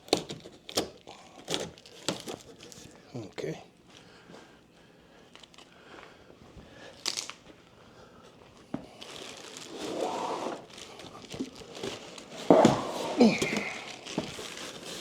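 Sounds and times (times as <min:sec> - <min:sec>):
packing material crinkling: 0:00.0 - 0:03.0, 0:07.0 - 0:07.4, 0:08.8 - 0:15.0.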